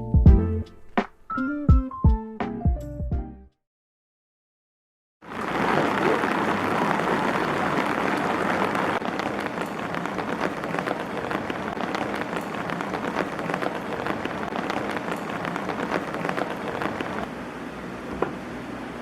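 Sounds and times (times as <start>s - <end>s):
rain pattering on hard surface: 5.2s - 17.3s.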